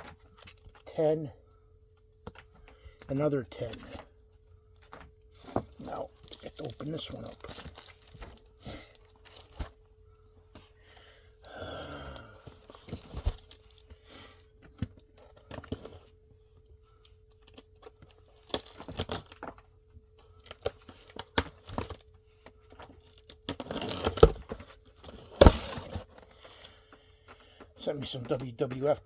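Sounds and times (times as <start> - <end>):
packaging tearing and crinkling: 23.5 - 26.0.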